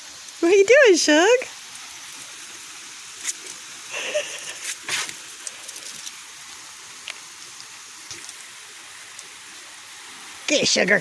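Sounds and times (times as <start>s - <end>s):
garden hose water spray hissing: 0.0s - 11.0s
dog biting at water splashes: 4.6s - 6.2s.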